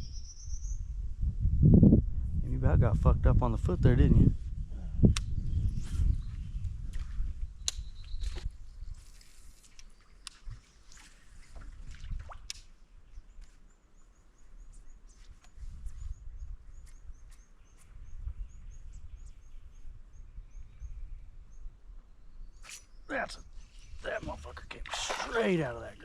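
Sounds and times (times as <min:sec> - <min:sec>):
wind rumble on microphone: 0:00.0 - 0:09.6, 0:10.2 - 0:13.4, 0:14.6 - 0:22.6.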